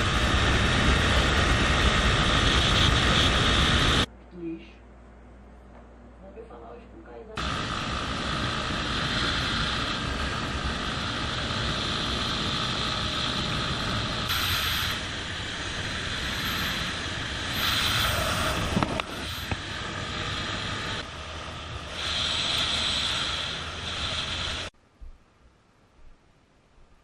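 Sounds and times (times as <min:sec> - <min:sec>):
vehicle engine and road noise: 0:00.0 - 0:04.1, 0:07.4 - 0:24.8.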